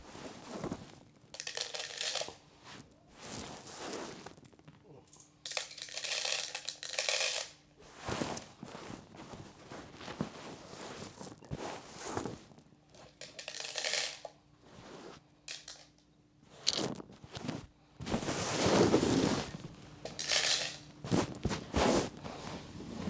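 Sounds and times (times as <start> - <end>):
corn kernels rustling and scattering: 1.4 - 2.4, 5.4 - 7.5, 13.1 - 14.2, 15.5 - 15.9, 18.0 - 22.6.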